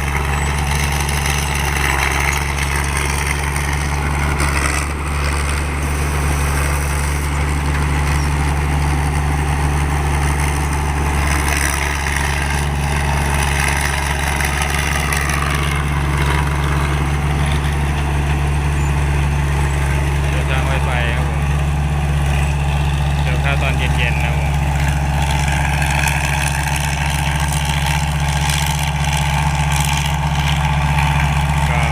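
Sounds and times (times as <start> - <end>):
combine harvester engine drone: 0.0 - 31.9
rushing machinery noise: 0.0 - 31.9.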